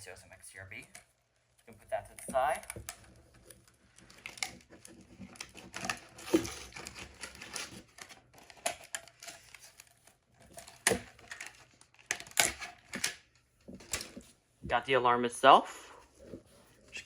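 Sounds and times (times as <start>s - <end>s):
packaging crinkling and tearing: 2.2s - 14.2s.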